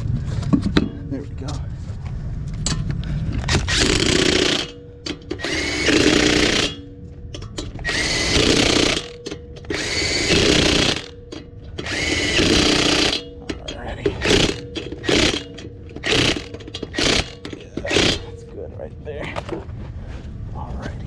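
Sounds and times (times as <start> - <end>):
power tool whining: 3.4 - 18.4.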